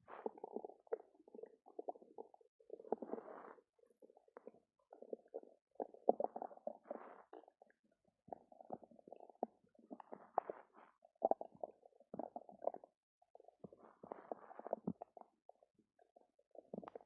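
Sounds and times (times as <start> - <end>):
stomach rumbling and gurgling: 0.0 - 17.0.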